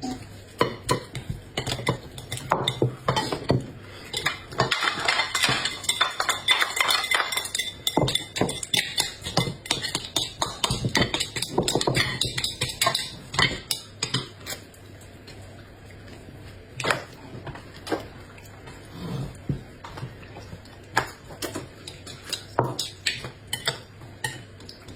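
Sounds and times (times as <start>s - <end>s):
utensils clinking against cookware: 0.0s - 14.6s, 20.8s - 24.9s.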